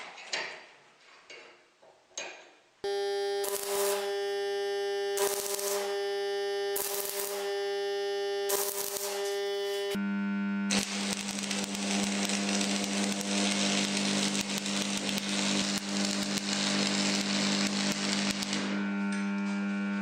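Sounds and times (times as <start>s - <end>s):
welding arc crackling: 2.8s - 10.1s, 10.7s - 19.5s.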